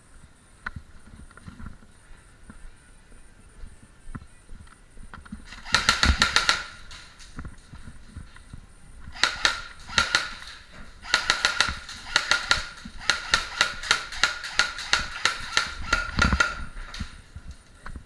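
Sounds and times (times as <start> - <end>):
airsoft guns firing bursts: 5.5 - 7.2, 9.1 - 17.2
gun motor whine: 9.1 - 17.1.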